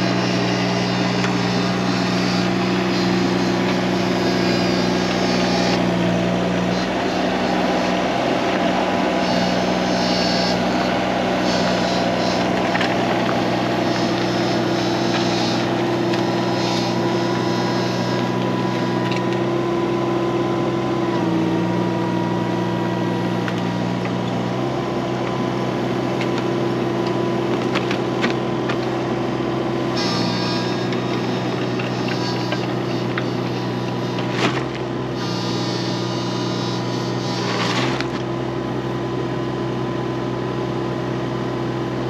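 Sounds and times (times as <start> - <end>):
engine running: 0.0 - 42.0.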